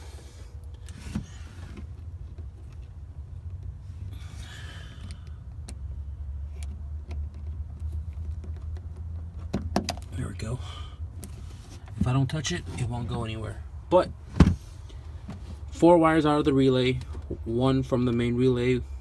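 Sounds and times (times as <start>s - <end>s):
steady low hum: 0.0s - 19.0s
light clicks of car wiring: 5.0s - 5.8s.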